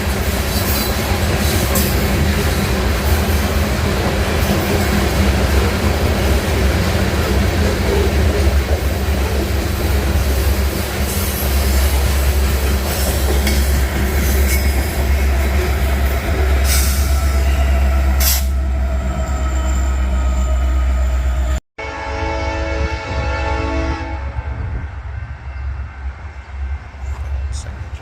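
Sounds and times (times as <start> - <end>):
train wheels rumbling on rail: 0.0 - 21.6.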